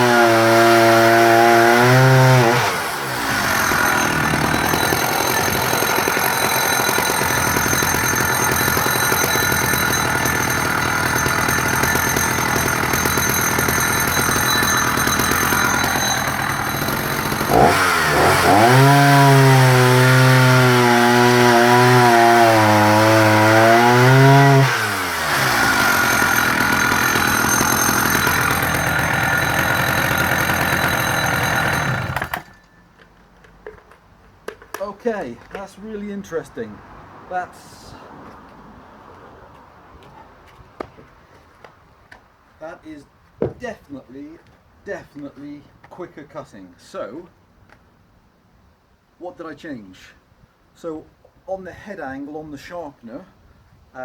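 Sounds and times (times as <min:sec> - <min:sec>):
chainsaw cutting through log: 0:00.0 - 0:32.6.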